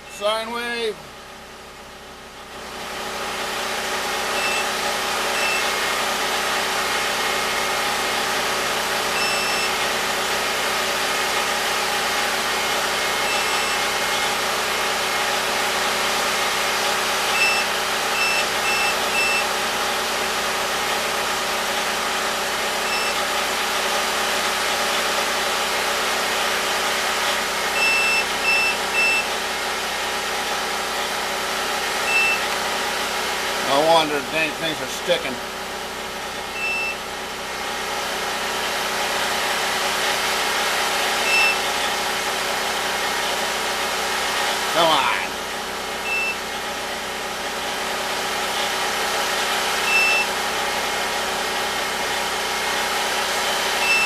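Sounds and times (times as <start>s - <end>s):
engine running steadily: 0.0s - 54.0s
short high electronic beeps: 4.4s - 4.7s, 5.4s - 5.8s, 9.2s - 9.7s, 13.3s - 13.9s, 32.1s - 32.5s, 36.6s - 37.0s, 49.9s - 50.3s.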